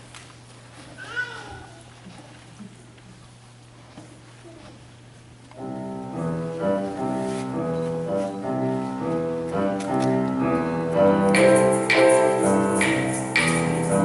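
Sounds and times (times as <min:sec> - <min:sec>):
piano playing chords: 0:05.6 - 0:14.0.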